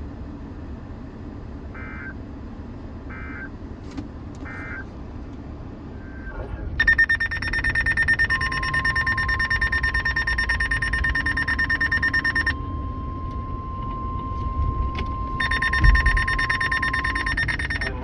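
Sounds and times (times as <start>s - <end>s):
rapid electronic alarm beeps: 1.8s - 2.2s, 4.5s - 4.8s, 6.1s - 18.0s
steady warning alarm tone: 6.8s - 18.0s.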